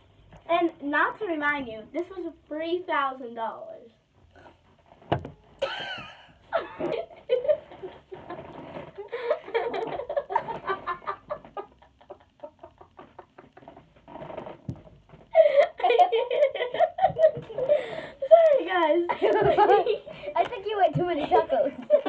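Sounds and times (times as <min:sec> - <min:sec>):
girls laughing and giggling: 0:05.6 - 0:13.8, 0:15.3 - 0:22.0.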